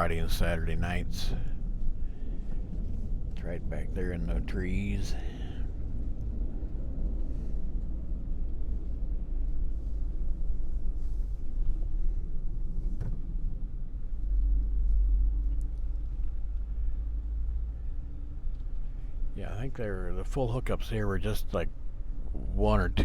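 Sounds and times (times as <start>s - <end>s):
vehicle driving rumble: 0.0s - 23.0s.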